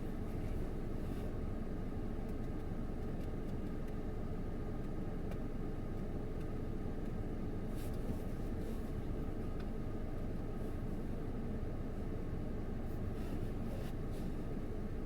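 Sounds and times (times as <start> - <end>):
low rumbling background noise: 0.0 - 15.0.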